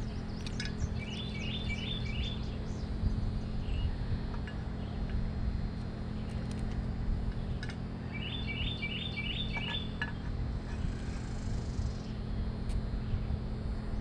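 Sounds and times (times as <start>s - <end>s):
songbird singing: 0.0s - 5.2s, 6.0s - 6.5s, 7.3s - 12.3s
steady low rumble: 0.0s - 14.0s.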